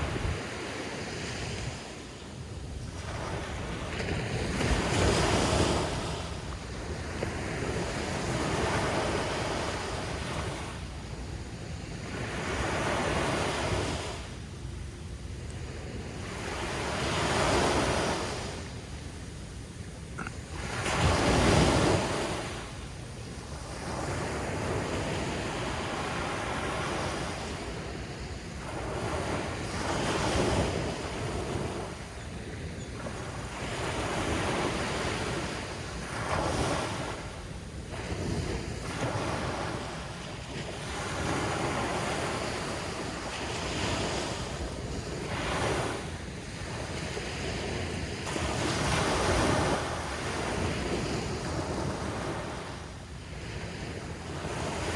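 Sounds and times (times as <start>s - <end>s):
surf breaking on a beach: 0.0s - 11.0s
wind buffeting microphone: 0.0s - 11.6s.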